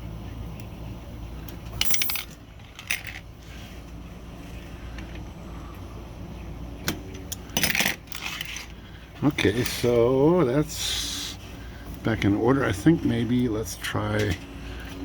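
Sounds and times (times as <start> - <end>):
small metal parts clinking: 1.6 - 3.3, 7.3 - 8.8.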